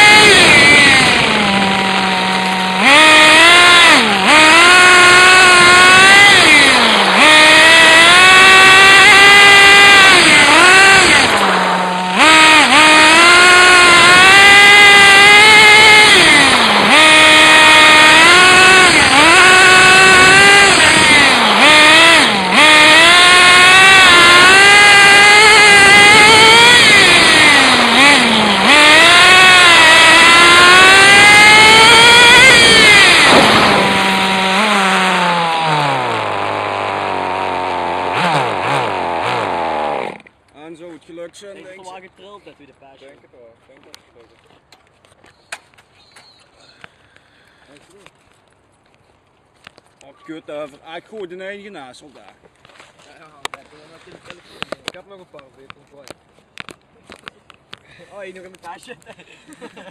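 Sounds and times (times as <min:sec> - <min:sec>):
small engine revving: 0:00.0 - 0:40.7.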